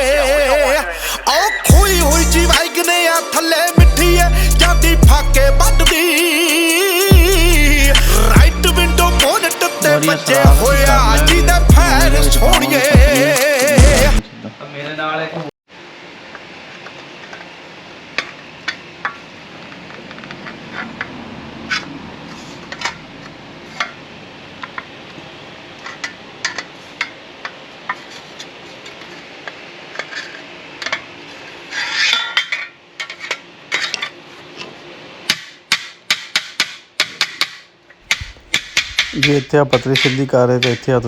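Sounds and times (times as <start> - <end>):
rasping rush: 0.0 - 14.2, 38.0 - 40.0.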